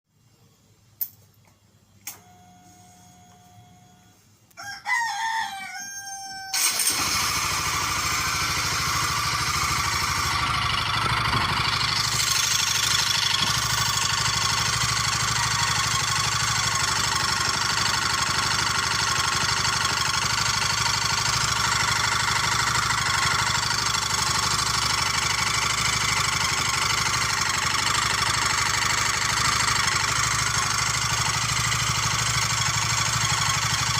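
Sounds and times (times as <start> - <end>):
clicks: 1.0 - 2.3
brief steady tone: 2.0 - 4.2
rooster crowing: 4.6 - 6.8
motorcycle engine idling: 6.6 - 33.9.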